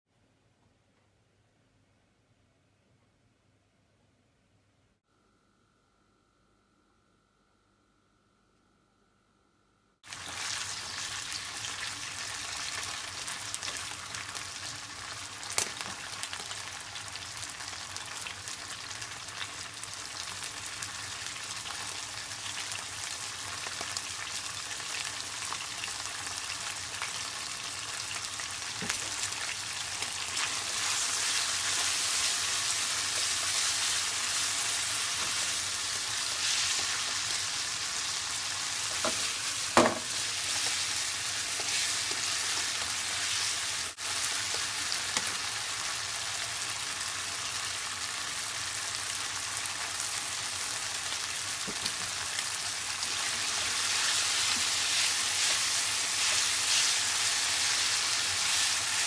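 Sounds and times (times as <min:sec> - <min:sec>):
food sizzling in oil: 0:10.0 - 0:59.0.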